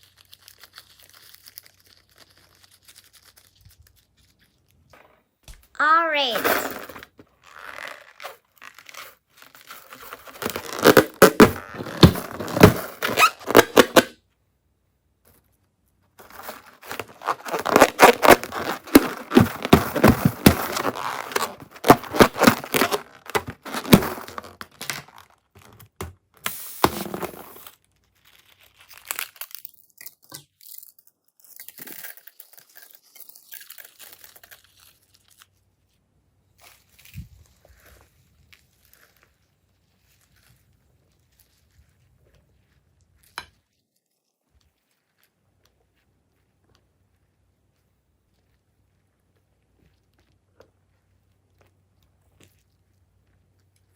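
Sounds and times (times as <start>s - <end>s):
slime squeezed and stretched by hand: 0.0s - 4.9s, 7.3s - 12.4s, 31.5s - 43.6s.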